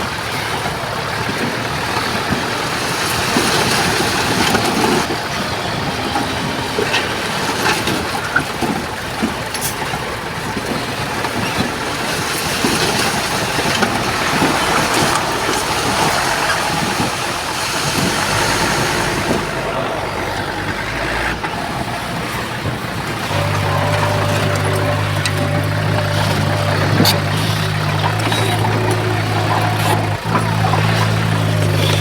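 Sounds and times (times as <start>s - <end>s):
heavy machinery diesel engine: 0.0s - 32.0s.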